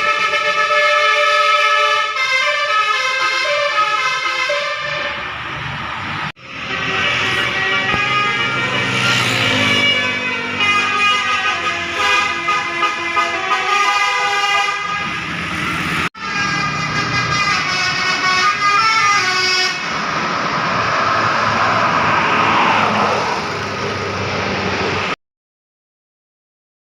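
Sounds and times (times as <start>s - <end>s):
bus air horn playing a tune: 0.0s - 5.3s, 6.4s - 15.4s, 16.2s - 20.0s.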